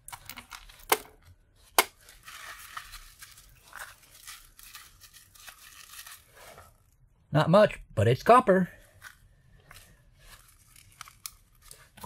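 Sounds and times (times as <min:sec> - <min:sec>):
thin wire rustling and scraping: 0:02.0 - 0:07.0, 0:08.9 - 0:12.0.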